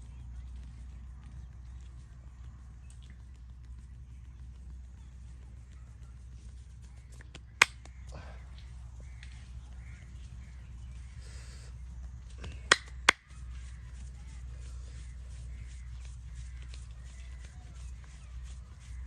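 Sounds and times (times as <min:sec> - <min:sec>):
low steady hum: 0:00.0 - 0:19.0
sharp snapping cracks: 0:07.2 - 0:08.0, 0:12.7 - 0:13.3.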